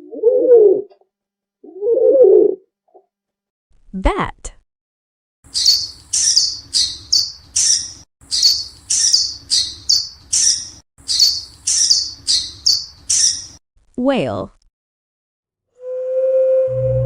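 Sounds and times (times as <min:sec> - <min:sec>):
high-pitched bat squeaks: 0:05.5 - 0:13.6.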